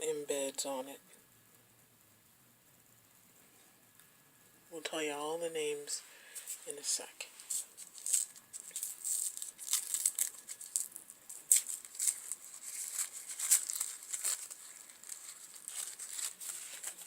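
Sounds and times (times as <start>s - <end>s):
packaging rustling and crinkling: 7.4s - 17.0s.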